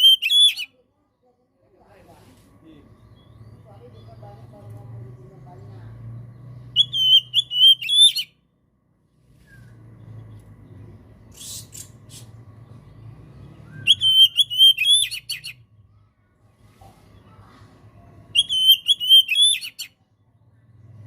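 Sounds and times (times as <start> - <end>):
bird singing whistled notes: 0.0 - 0.7, 6.6 - 8.4, 9.4 - 10.1, 13.1 - 15.6, 18.4 - 20.0
low hum: 8.5 - 14.0.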